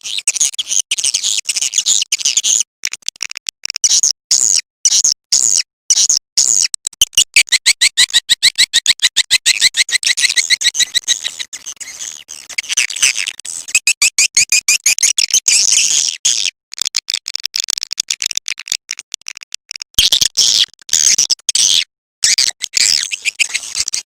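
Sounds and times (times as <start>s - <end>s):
swiftlets twittering chirps: 7.0s - 11.5s.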